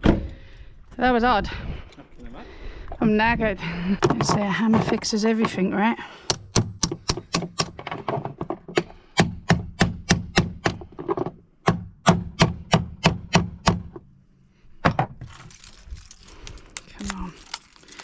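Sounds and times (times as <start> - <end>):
hammer tapping on metal: 6.3 - 7.8.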